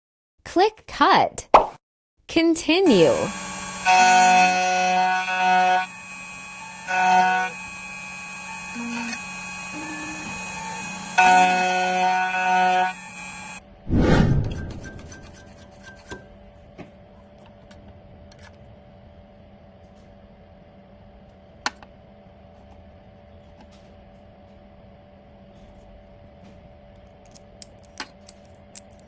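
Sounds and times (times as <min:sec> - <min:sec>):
key cutting machine humming: 0:02.8 - 0:13.6.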